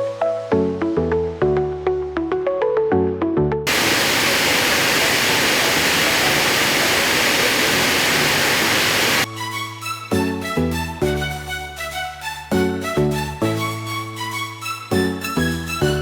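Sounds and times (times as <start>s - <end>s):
waterfall rushing: 3.7s - 9.3s.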